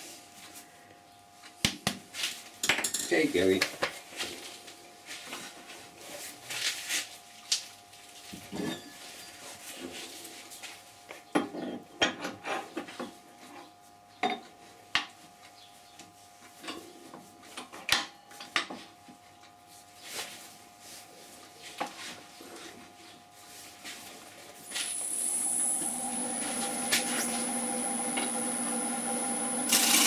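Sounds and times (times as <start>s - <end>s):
wood lathe humming: 24.6s - 30.0s
turning tool clicking and scraping: 29.6s - 30.0s.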